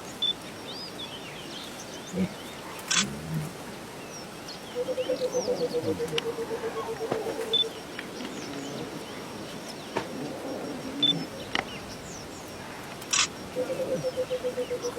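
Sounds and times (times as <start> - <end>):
birds chirping: 0.2 - 14.9.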